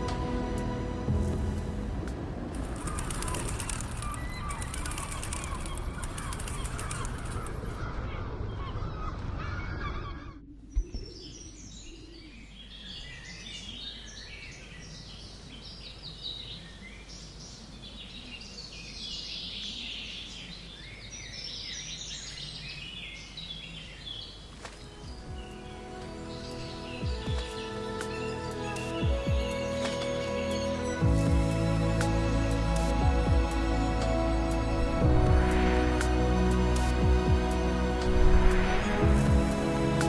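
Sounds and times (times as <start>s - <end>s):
music: 0.0s - 3.1s, 25.0s - 40.0s
loud dense sound: 0.0s - 4.1s, 25.2s - 40.0s.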